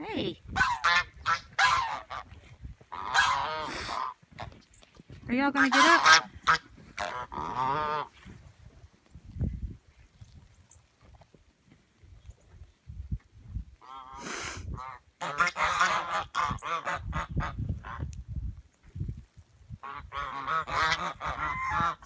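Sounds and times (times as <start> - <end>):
geese honking: 0.6 - 2.3, 2.9 - 4.6, 5.5 - 8.1, 14.8 - 18.0, 19.8 - 22.0.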